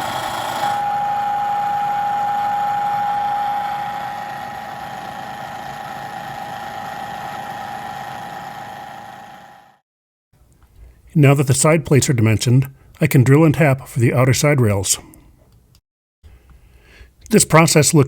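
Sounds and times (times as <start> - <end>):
milling machine whine: 0.0 - 9.8.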